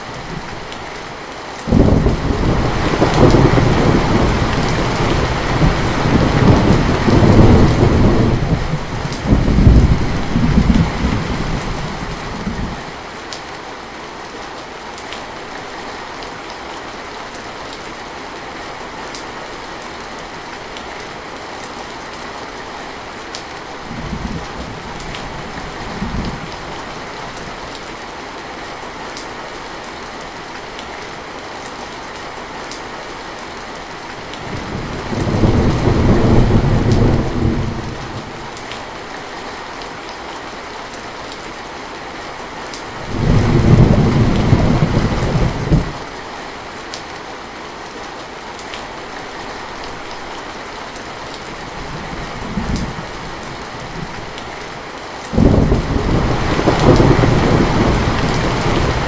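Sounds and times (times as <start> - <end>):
heavy rain: 0.0 - 59.0
rolling thunder: 1.7 - 12.8, 34.5 - 38.3, 43.0 - 46.0, 55.4 - 59.0.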